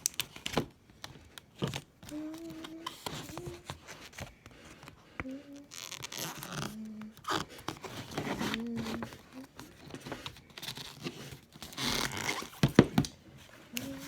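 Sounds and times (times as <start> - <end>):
material rustling and crinkling: 0.0 - 14.0
chair squeaking: 5.6 - 9.3, 10.6 - 12.7.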